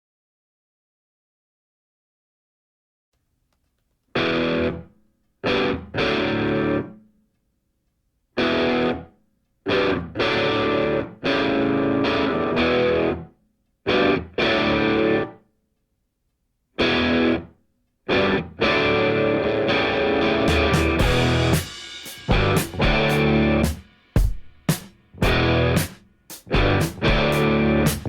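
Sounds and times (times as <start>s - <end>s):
distorted electric guitar chords: 4.2s - 4.8s, 5.5s - 6.9s, 8.4s - 9.0s, 9.7s - 13.3s, 13.9s - 15.3s, 16.8s - 17.5s, 18.1s - 23.8s, 25.2s - 28.0s.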